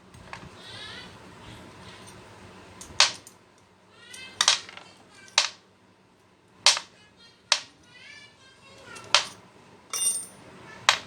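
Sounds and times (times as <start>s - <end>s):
metallic clanks of metal parts: 9.0s - 11.0s.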